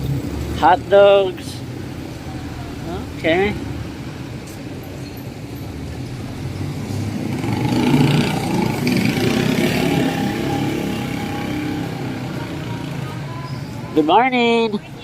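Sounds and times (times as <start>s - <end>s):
vehicle engine passing by: 5.8s - 13.9s.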